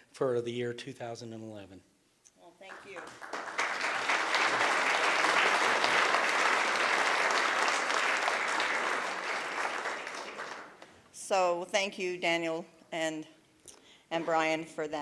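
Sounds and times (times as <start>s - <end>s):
audience applauding: 2.7s - 11.0s.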